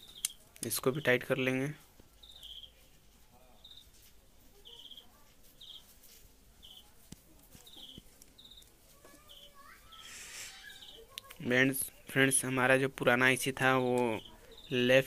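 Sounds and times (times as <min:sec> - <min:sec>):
faint high trilling chirps: 0:00.0 - 0:15.0.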